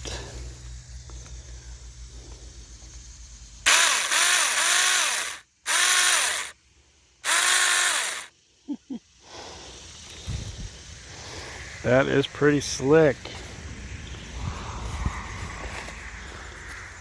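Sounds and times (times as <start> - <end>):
mini chainsaw motor whine: 3.6 - 6.6, 7.2 - 8.3.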